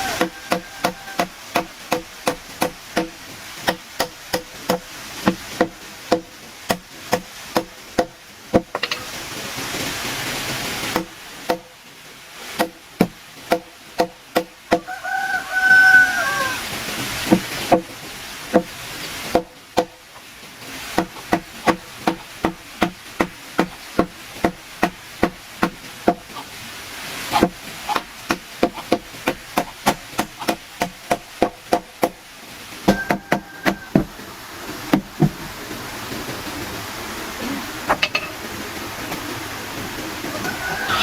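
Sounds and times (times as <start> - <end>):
tool striking wood: 0.1 - 9.1, 10.9 - 11.7, 12.6 - 14.9, 17.3 - 17.9, 19.3 - 20.0, 20.9 - 26.4, 27.3 - 32.2.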